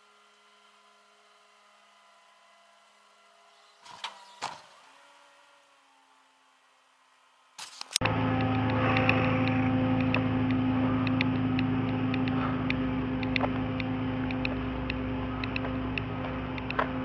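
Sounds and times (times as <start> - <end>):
vehicle engine idling: 8.0 - 17.0
light ticks: 8.4 - 16.9.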